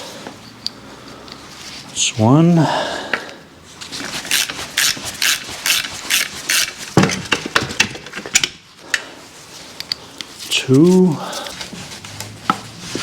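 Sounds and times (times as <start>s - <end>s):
ratchet wrench clicking: 4.3s - 6.8s.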